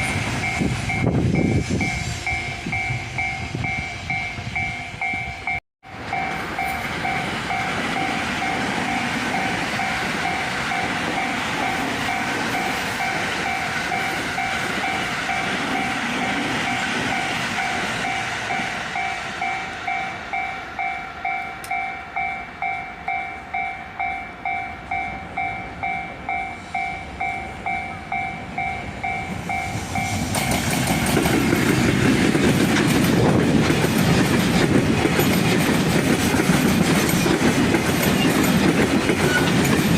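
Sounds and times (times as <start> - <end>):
level crossing warning bell: 0.0 - 30.6
trains passing rumble: 0.0 - 39.9.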